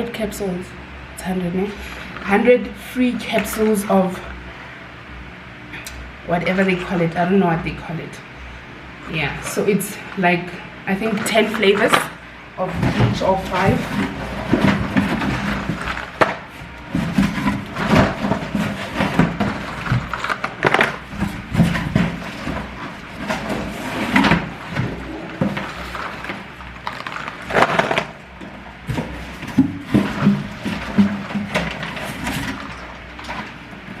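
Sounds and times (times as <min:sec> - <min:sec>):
cardboard boxes being handled: 0:12.6 - 0:28.1.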